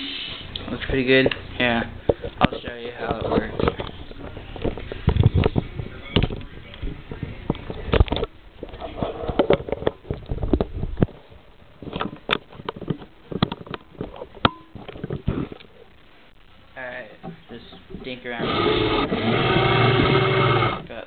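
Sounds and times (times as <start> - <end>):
faint motor hum: 15.8 - 21.0.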